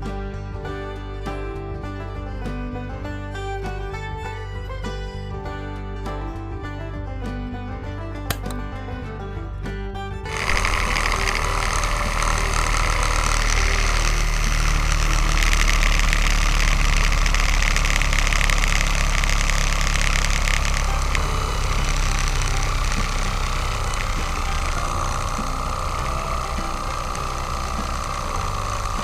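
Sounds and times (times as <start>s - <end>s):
hissing noise: 10.3s - 29.0s
small motor whirring hum: 10.3s - 29.0s.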